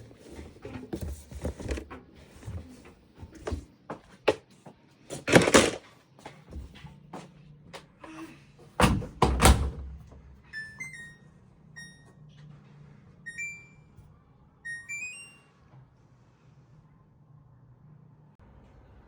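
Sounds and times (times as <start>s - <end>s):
appliance door thunks: 8.8s - 10.3s.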